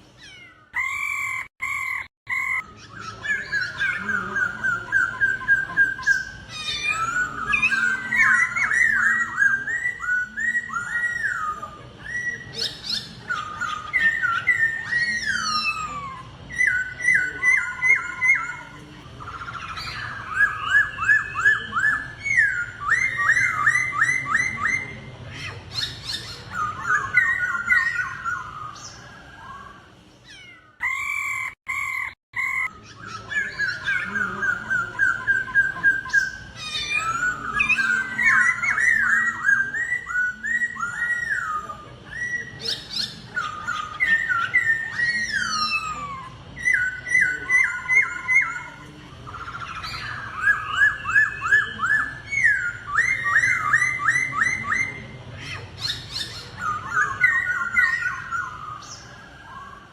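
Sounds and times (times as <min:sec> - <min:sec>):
laughingthrush whistled song: 0:00.7 - 0:29.9, 0:30.8 - 0:59.9.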